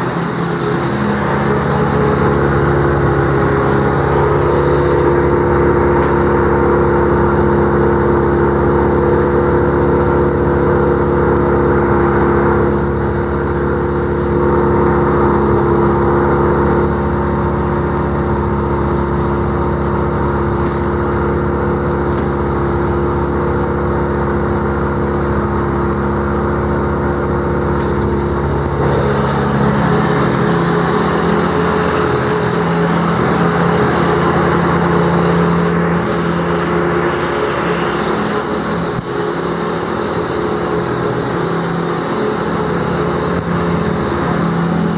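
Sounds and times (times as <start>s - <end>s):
wood chipper running: 0.0s - 44.9s
hiss: 27.9s - 44.9s.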